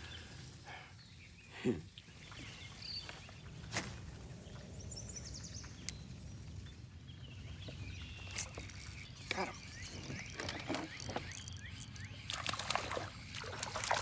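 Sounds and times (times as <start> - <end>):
faint high chirps: 8.2 - 12.3
sharp clicks: 8.3 - 12.5.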